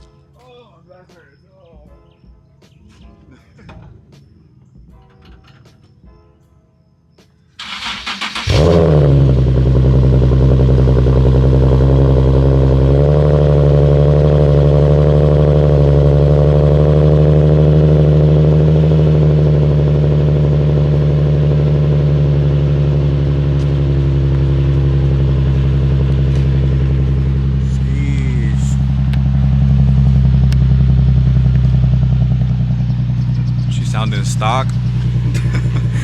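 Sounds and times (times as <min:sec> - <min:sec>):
car engine starting and idling: 0:07.6 - 0:36.0.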